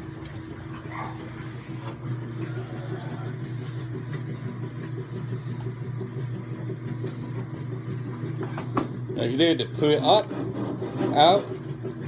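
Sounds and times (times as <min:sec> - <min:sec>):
low machine hum: 0:00.0 - 0:12.0.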